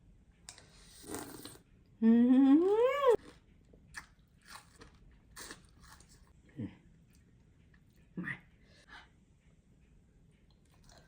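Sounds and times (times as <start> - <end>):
woman humming mmm: 2.0 - 3.2.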